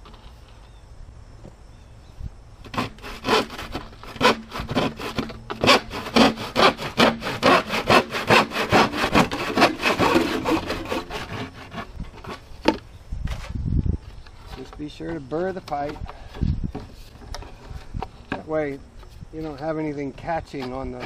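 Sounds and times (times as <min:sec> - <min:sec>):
hand saw cutting plastic pipe: 0:02.7 - 0:12.5.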